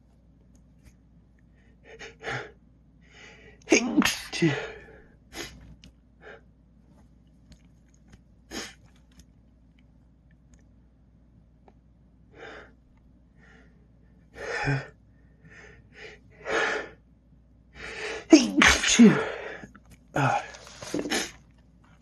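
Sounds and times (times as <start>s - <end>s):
man sneezing: 3.7s - 4.8s, 18.2s - 19.6s.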